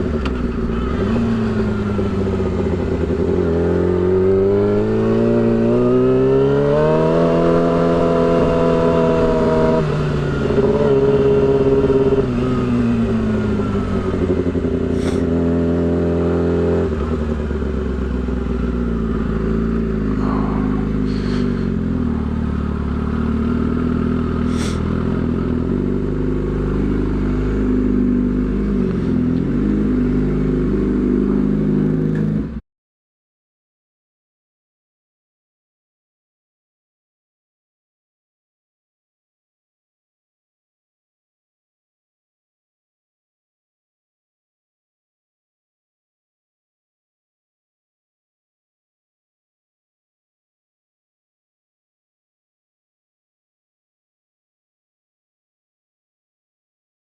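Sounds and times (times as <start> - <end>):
motorcycle engine revving: 0.0 - 32.6.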